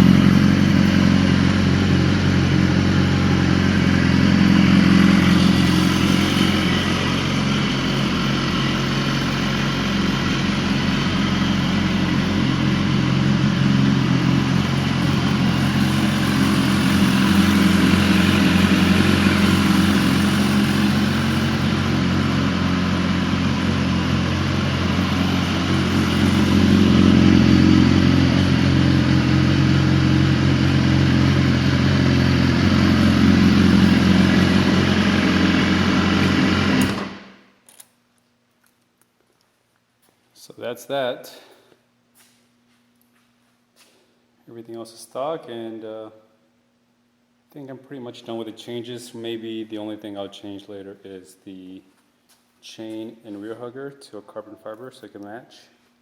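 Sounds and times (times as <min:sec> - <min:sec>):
motorcycle engine idling: 0:00.0 - 0:37.3.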